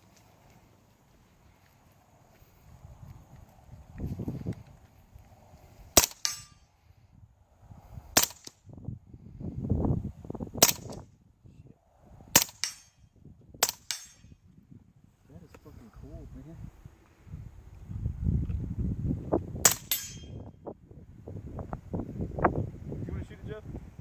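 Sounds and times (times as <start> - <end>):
suppressed gunshots: 6.0 - 6.4, 10.6 - 11.0, 12.4 - 12.9.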